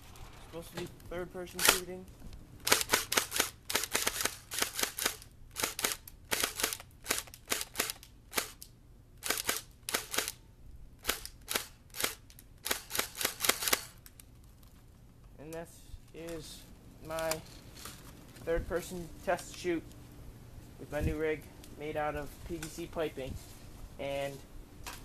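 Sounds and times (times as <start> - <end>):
airsoft gun firing single shots: 2.6 - 8.6, 9.2 - 10.4.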